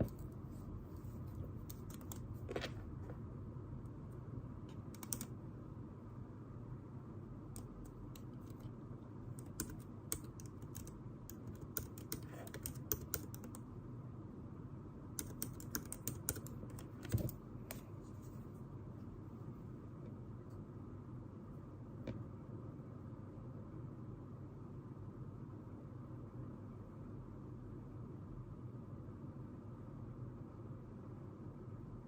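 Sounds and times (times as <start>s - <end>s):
low room hum: 0.0s - 32.0s
typing on computer keyboard: 1.6s - 2.3s, 4.7s - 5.4s, 7.6s - 8.7s, 9.4s - 13.6s, 15.2s - 17.8s.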